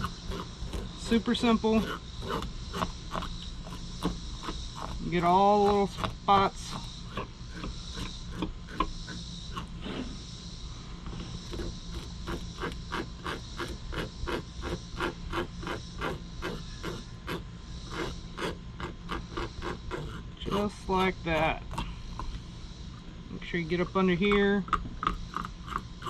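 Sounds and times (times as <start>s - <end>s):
fork scraping fish scales: 0.0s - 8.9s, 11.5s - 21.9s.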